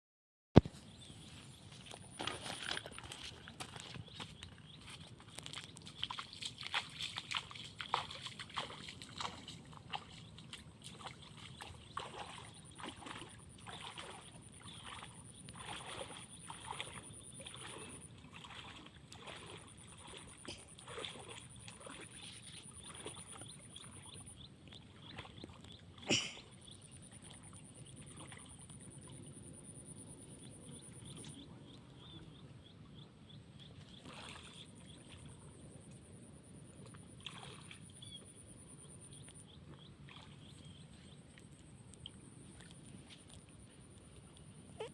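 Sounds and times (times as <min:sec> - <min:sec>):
water splashing from paddling: 0:01.7 - 0:26.3, 0:33.8 - 0:35.4, 0:37.2 - 0:38.2.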